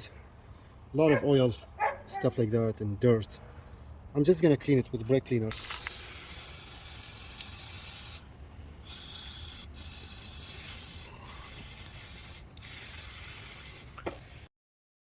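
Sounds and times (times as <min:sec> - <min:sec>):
aerosol spray hissing: 0:05.5 - 0:14.0.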